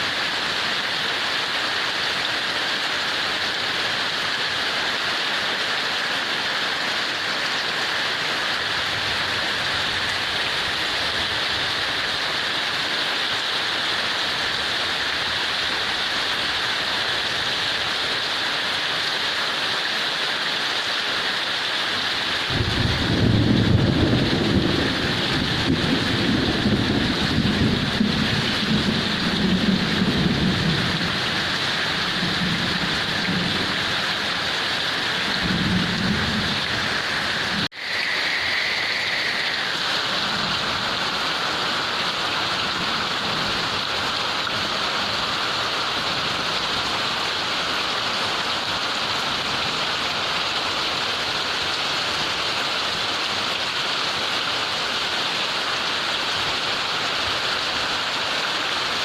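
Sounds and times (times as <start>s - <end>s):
heavy rain pouring: 0.0s - 59.0s
low thunder rumbling: 22.5s - 37.7s.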